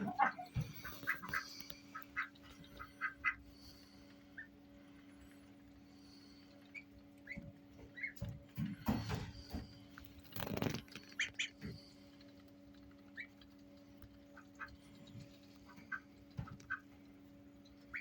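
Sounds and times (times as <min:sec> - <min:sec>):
ducklings peeping: 0:00.0 - 0:18.0
faint steady hum: 0:00.0 - 0:18.0.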